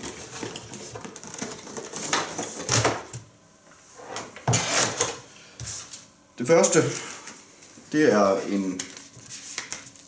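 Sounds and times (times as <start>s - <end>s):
packaging rustling and scraping: 0.0s - 3.1s, 4.0s - 6.0s.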